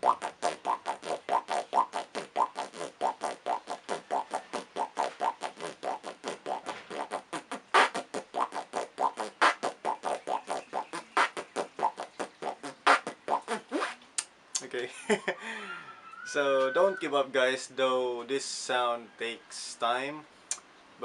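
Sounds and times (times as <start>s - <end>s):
beatboxing inward lip roll: 0.0s - 14.7s.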